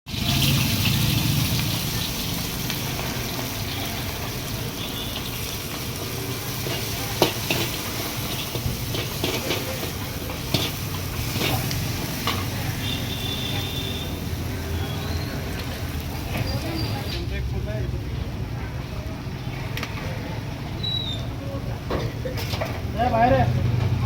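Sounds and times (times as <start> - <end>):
food sizzling in a wok: 0.1 - 17.6
metal spatula clanking on pan: 5.2 - 12.6.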